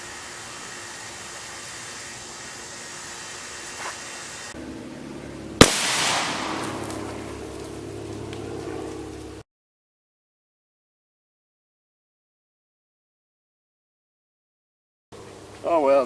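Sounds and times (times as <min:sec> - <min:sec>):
air rifle shot: 0:05.6 - 0:07.3.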